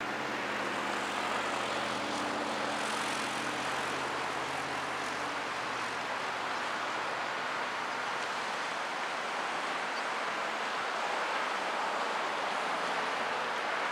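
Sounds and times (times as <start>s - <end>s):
locomotive engine drone: 0.0s - 7.4s.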